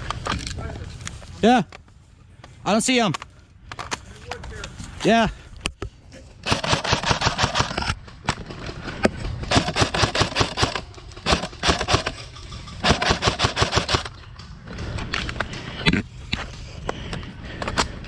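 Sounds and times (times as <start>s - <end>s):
airsoft guns firing bursts: 6.4s - 8.0s, 9.4s - 12.2s, 12.8s - 14.2s.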